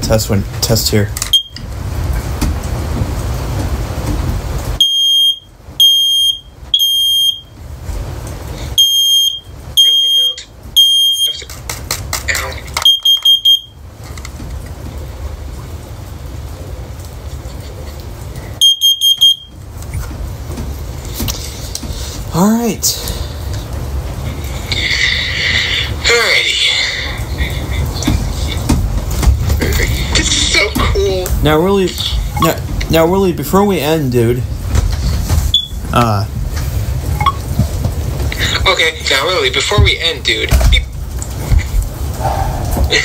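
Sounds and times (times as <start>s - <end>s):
smoke alarm shrill beeps: 1.3s - 1.6s, 4.8s - 7.6s, 8.8s - 11.4s, 12.8s - 13.8s, 18.6s - 19.6s, 35.5s - 35.8s
quick alarm beeps: 4.8s - 7.5s, 12.9s - 13.7s, 18.6s - 19.5s.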